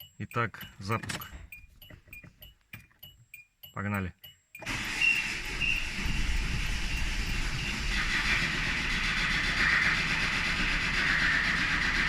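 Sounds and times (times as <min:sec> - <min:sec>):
diesel engine running: 0:04.6 - 0:12.0
rapid knock inside engine: 0:04.7 - 0:12.0.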